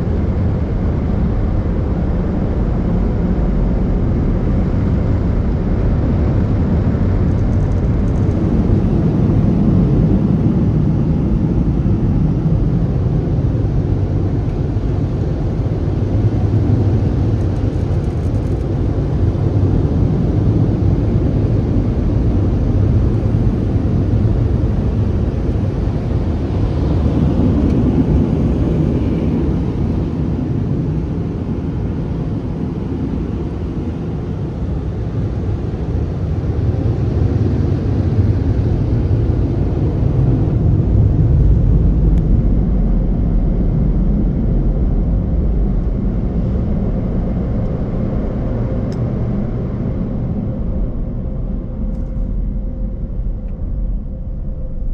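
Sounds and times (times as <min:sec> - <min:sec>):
car wash equipment rumbling: 0:07.4 - 0:31.0.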